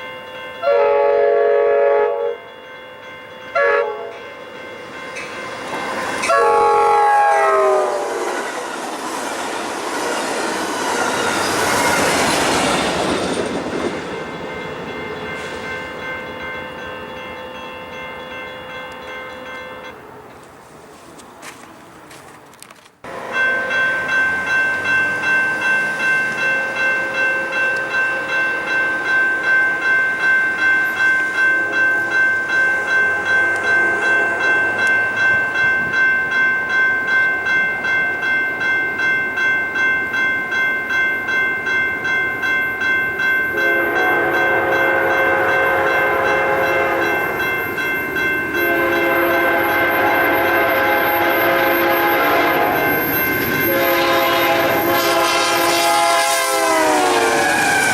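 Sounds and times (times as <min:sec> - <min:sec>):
crossing warning bell ringing: 0:00.0 - 0:20.4, 0:23.0 - 0:57.9
train air horn blasts: 0:00.6 - 0:02.4, 0:03.6 - 0:04.2, 0:06.2 - 0:08.4, 0:43.5 - 0:47.2, 0:48.6 - 0:57.9.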